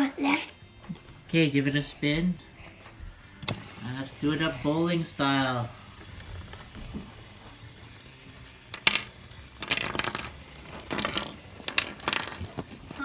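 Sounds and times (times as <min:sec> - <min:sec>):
plastic minifigures clattering: 0:08.6 - 0:13.0.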